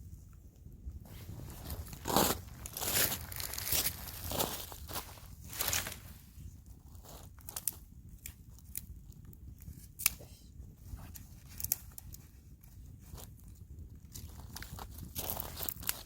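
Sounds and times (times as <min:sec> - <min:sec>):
rustling: 0:01.0 - 0:07.8
dry wood snapping and crackling: 0:07.3 - 0:10.2, 0:13.2 - 0:16.0.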